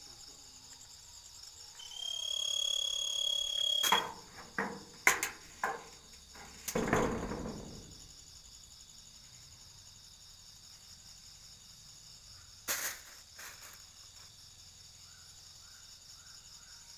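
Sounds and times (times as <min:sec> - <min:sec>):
high-pitched trilling: 0:01.8 - 0:04.1
high whistle-like tone: 0:01.8 - 0:04.2
sharp knocks: 0:03.8 - 0:08.0.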